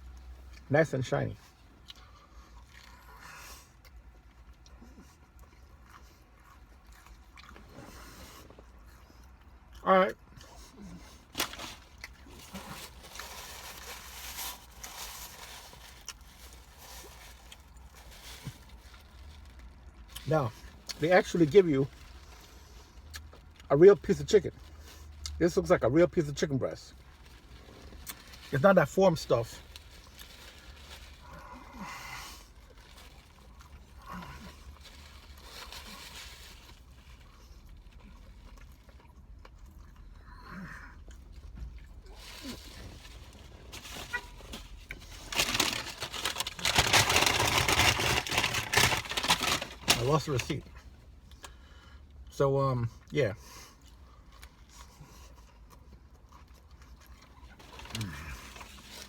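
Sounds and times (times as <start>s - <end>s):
chewing food: 1.4s - 13.4s, 32.5s - 43.5s, 53.7s - 59.0s
wrapper rustling: 11.3s - 22.5s, 26.2s - 31.6s, 32.6s - 38.5s, 42.1s - 50.8s, 57.0s - 59.0s.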